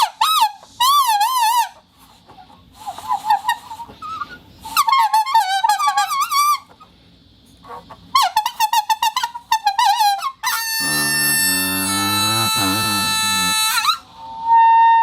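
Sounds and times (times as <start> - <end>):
squeaky warbling whistle: 10.4 - 15.0.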